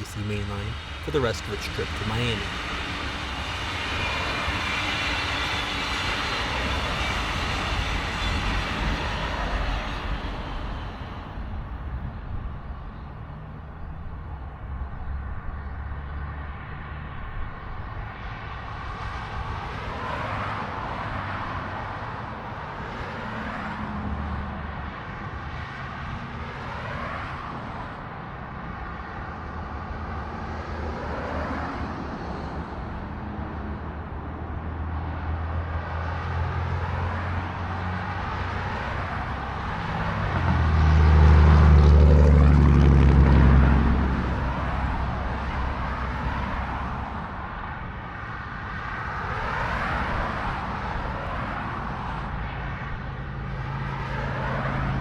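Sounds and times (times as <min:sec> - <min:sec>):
vehicles whooshing past: 0:28.6 - 0:55.0.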